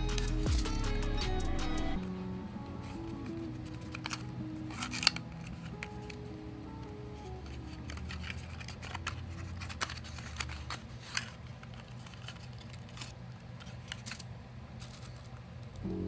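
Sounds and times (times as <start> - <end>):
faint low hum: 0.0 - 16.0
plastic packaging clicks and scratches: 2.8 - 6.2, 7.2 - 15.8.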